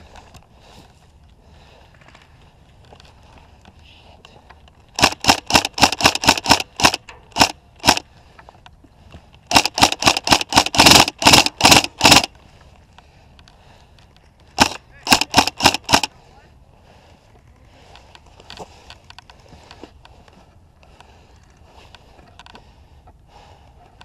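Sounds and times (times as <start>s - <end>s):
airsoft gun shots: 5.0s - 8.0s, 9.5s - 12.3s, 14.6s - 16.1s.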